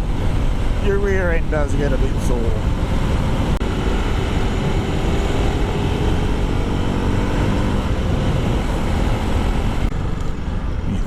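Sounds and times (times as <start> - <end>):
riding wind rush: 0.0 - 11.0.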